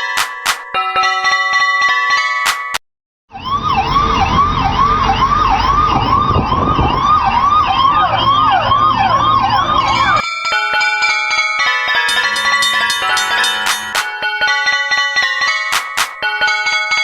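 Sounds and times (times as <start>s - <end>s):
siren sweeping up and down: 3.3s - 10.2s.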